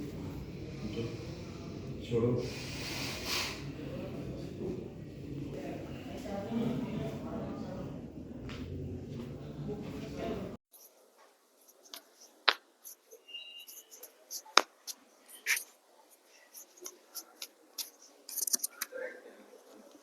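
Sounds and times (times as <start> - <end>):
thin squeak: 13.1 - 14.5.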